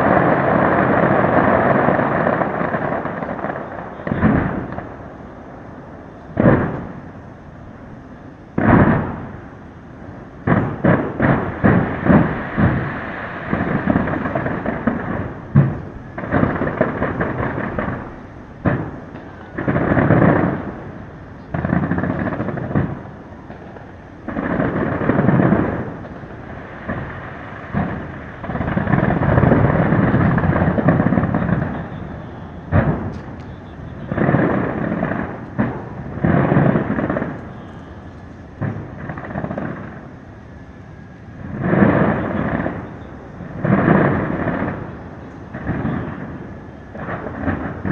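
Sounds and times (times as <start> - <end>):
sharp firework bangs: 0.0 - 7.3, 8.5 - 9.6, 10.4 - 47.9
fireworks booming and crackling: 0.0 - 47.9.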